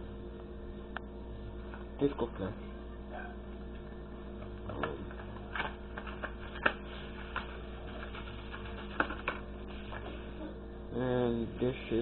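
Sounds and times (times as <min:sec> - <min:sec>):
steady low hum: 0:00.0 - 0:12.0
packaging clicks and rustles: 0:03.7 - 0:10.2.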